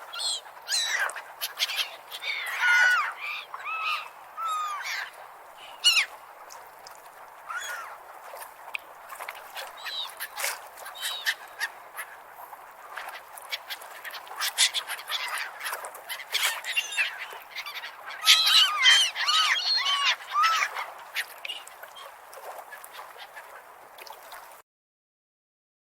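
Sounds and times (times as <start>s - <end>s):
seagulls squawking: 0.1s - 6.2s, 7.5s - 8.0s, 13.5s - 22.1s.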